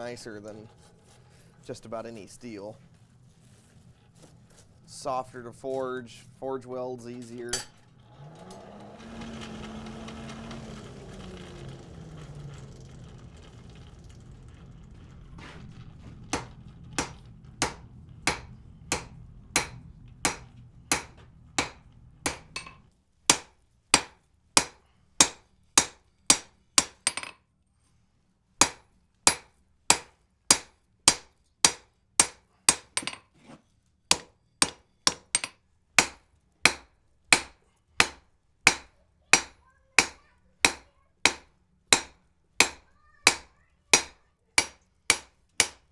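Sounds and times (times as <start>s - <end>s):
hammer striking iron on anvil: 7.5s - 7.8s, 16.3s - 27.3s, 28.6s - 33.2s, 34.1s - 45.9s
low steady hum: 10.4s - 22.9s.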